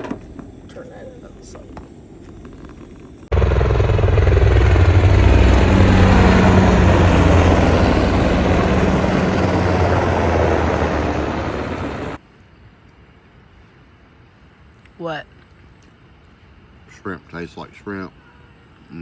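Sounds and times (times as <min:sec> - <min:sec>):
loud engine drone: 0:03.3 - 0:12.2.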